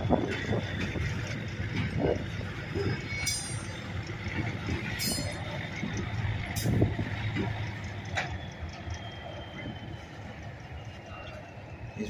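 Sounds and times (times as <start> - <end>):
locomotive engine rumbling: 0.0 - 12.0
sharp metallic clinks: 2.9 - 6.8.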